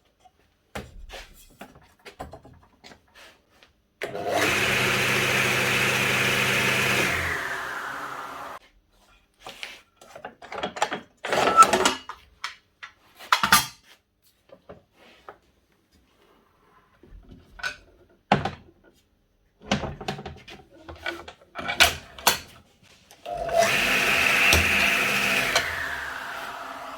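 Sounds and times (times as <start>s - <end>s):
knocks and clatters of handling saw: 0.2s - 3.2s, 9.5s - 15.4s, 17.0s - 22.6s
saw motor whining: 4.1s - 8.6s, 23.3s - 26.9s.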